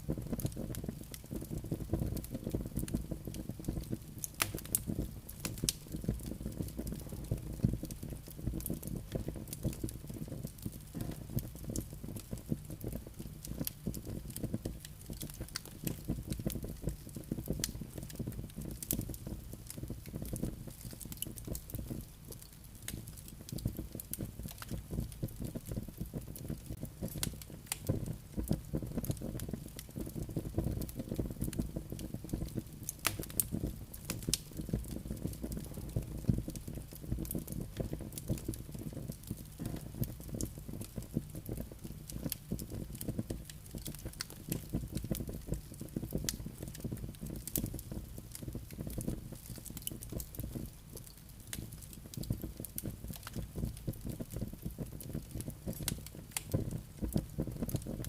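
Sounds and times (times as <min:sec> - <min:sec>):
logs crackling and popping: 0:00.0 - 0:58.0
low rumble of flames: 0:00.0 - 0:58.0.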